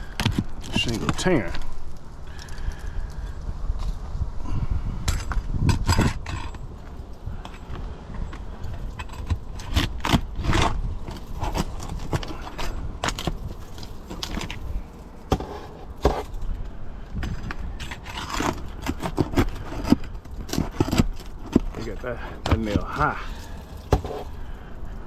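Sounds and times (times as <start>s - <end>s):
shingles scraping and rustling: 0.0s - 4.1s, 5.1s - 25.0s.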